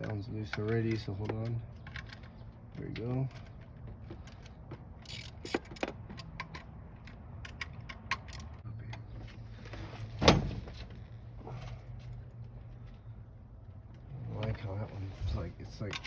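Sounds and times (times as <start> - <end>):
ratchet clicks: 5.0 - 6.7, 7.4 - 8.6.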